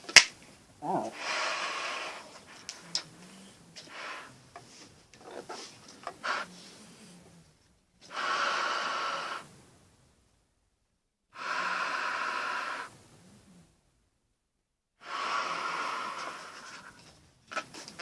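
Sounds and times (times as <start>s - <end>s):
breathing through gas mask: 0.8s - 7.4s, 8.0s - 9.6s, 11.3s - 13.0s, 15.0s - 17.0s.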